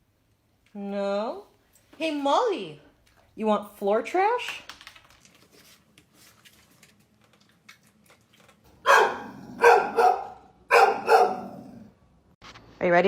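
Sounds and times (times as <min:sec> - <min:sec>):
dog barking: 0:08.8 - 0:11.8.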